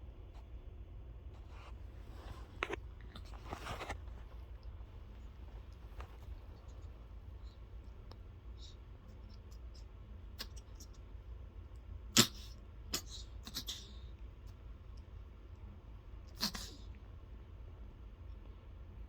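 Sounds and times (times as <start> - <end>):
pet sneezing snorts: 12.1 - 14.1, 16.3 - 16.9.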